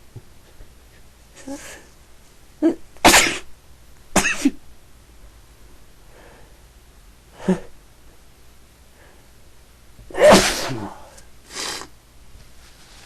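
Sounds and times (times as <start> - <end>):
person sneezing: 2.6 - 3.5, 10.1 - 11.9
sharp intake of breath: 10.3 - 11.9.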